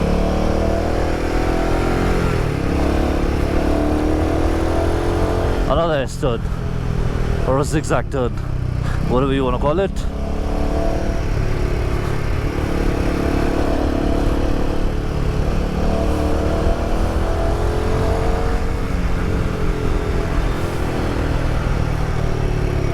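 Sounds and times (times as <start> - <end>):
motorcycle engine running: 0.0 - 22.9.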